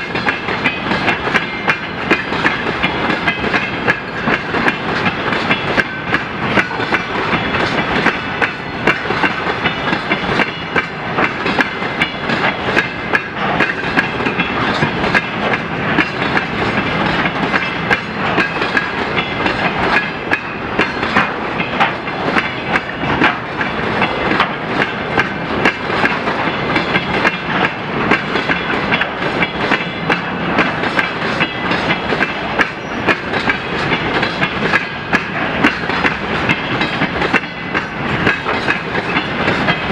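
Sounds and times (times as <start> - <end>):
train wheels clacking on rails: 0.0 - 39.9.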